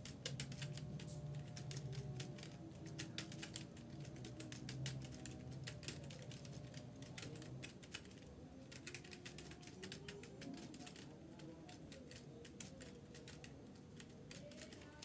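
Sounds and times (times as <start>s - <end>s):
typing on computer keyboard: 0.0s - 15.0s.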